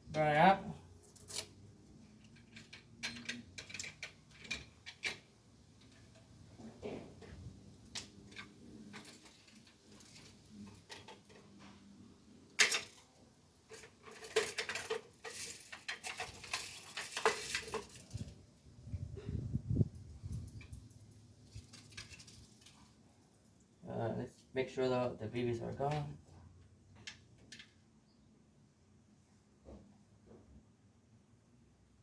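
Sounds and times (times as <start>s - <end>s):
toy gun parts clicking and clattering: 2.2s - 6.3s, 12.6s - 18.3s, 21.6s - 22.8s.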